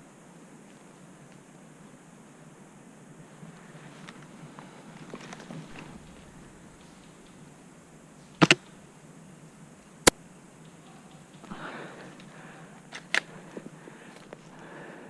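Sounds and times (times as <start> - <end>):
soft rustling: 3.2 - 14.9
sharp short clicks: 5.7 - 8.9.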